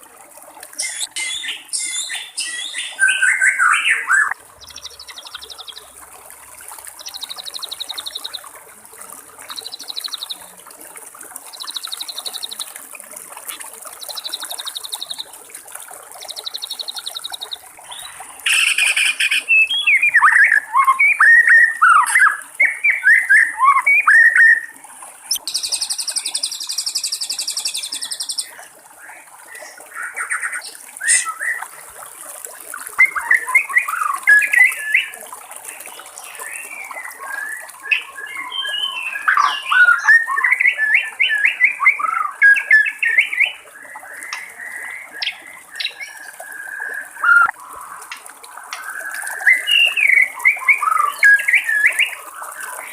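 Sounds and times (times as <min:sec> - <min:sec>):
bird singing: 0:00.8 - 0:05.9, 0:16.2 - 0:24.7, 0:29.6 - 0:31.6, 0:36.5 - 0:43.6.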